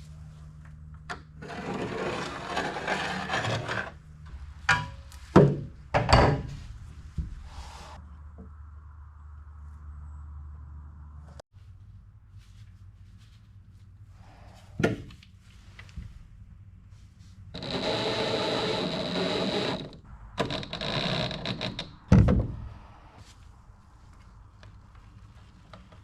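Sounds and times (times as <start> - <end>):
power tool whining: 17.6 - 21.4.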